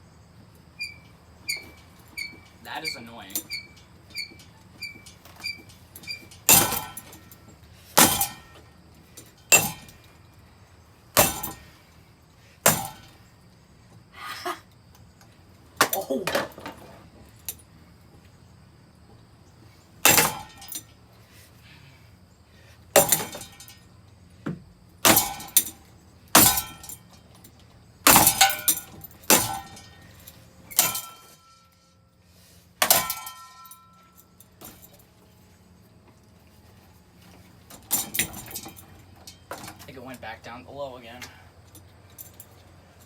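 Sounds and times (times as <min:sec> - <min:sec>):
metallic ring: 0:00.8 - 0:07.4, 0:08.0 - 0:08.6, 0:09.3 - 0:10.1, 0:20.0 - 0:20.9, 0:26.4 - 0:27.2, 0:28.1 - 0:32.1, 0:32.8 - 0:35.1
blows smashing ceiling fan: 0:07.9 - 0:08.6.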